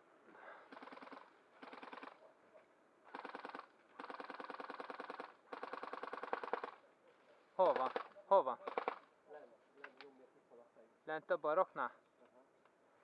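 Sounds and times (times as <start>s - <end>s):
airsoft gun full-auto bursts: 0.7s - 2.2s, 3.1s - 6.8s, 7.8s - 9.0s.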